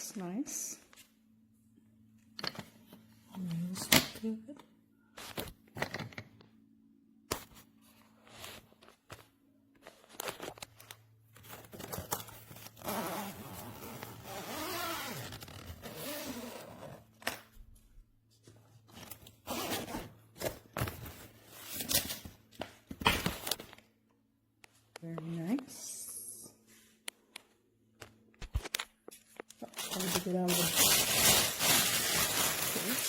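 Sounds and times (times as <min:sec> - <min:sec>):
packaging rustling and scraping: 0:07.4 - 0:17.2, 0:18.4 - 0:22.6, 0:28.6 - 0:33.0.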